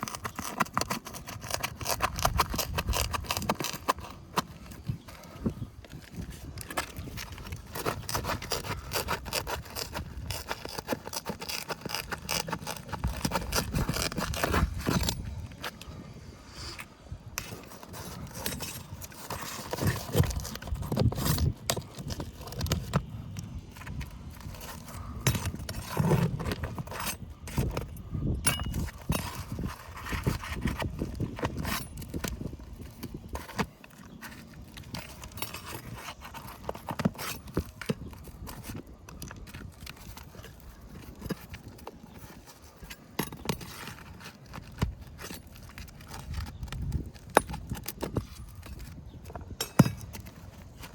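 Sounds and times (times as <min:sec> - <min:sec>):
metal tools scraping shingles: 0:16.6 - 0:23.0, 0:23.8 - 0:50.9.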